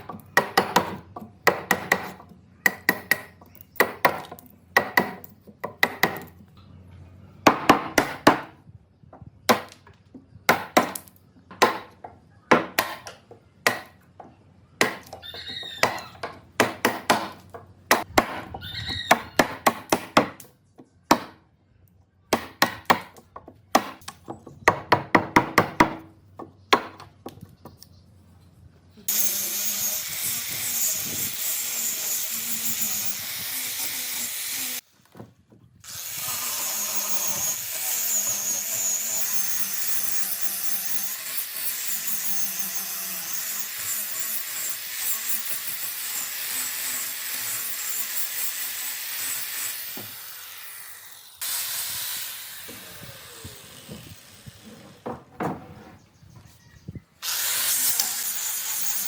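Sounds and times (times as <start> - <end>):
hand tool striking wood: 0.0 - 6.3, 10.5 - 14.0, 14.8 - 15.2, 15.8 - 18.5
power tool whirring: 29.1 - 34.8, 35.8 - 55.1, 57.2 - 59.0.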